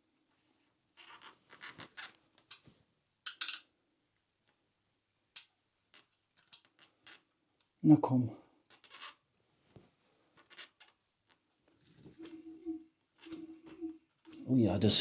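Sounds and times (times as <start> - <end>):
scratching and clicking handling noises: 0.3 - 3.7, 5.4 - 7.4, 8.7 - 14.5.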